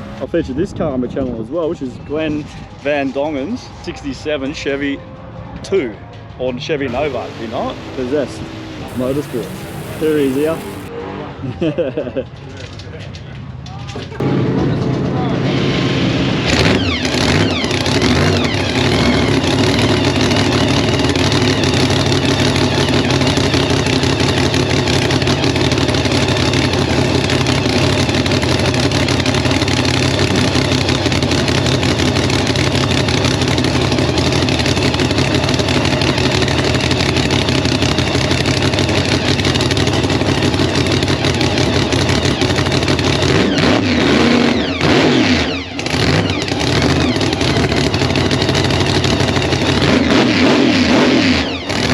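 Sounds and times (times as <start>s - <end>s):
race car engine revving: 8.9s - 10.9s, 37.1s - 51.9s.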